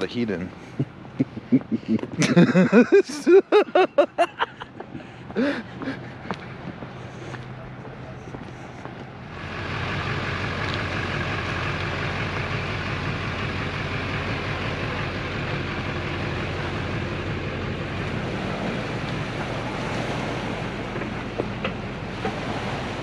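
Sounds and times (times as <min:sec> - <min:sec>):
vehicle engine droning: 0:00.0 - 0:23.0.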